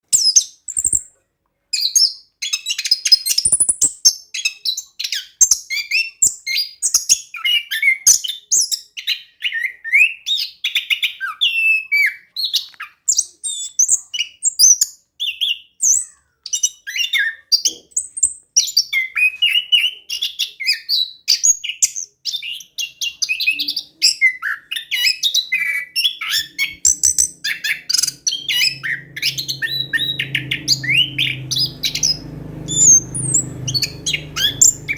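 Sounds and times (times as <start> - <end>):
thrush singing: 26.3 - 34.9
low steady hum: 26.6 - 34.9.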